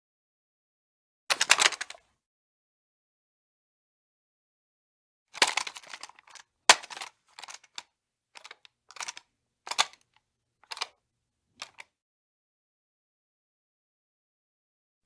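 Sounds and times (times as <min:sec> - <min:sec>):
gun mechanical clicks and clacks: 0:01.3 - 0:02.0, 0:05.4 - 0:07.8, 0:08.4 - 0:10.0, 0:10.7 - 0:10.9, 0:11.6 - 0:11.8.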